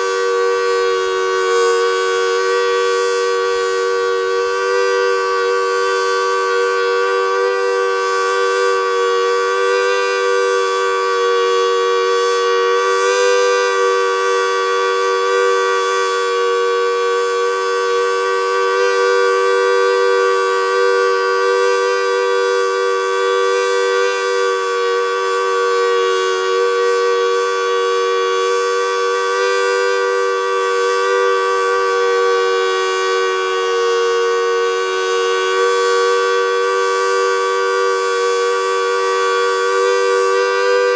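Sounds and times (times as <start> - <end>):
dual-tone warning siren: 0.0 - 40.9.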